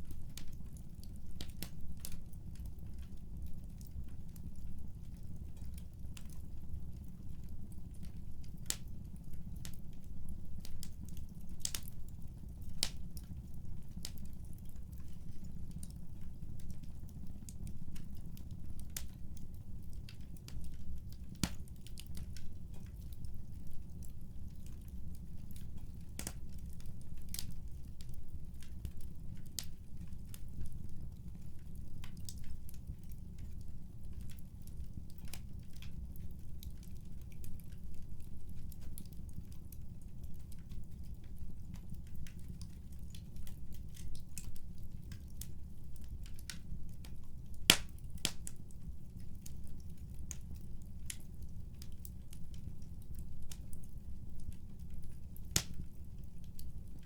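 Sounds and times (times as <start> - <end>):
fire crackling and popping: 0.0 - 57.0
low rumble of fire: 0.0 - 57.0.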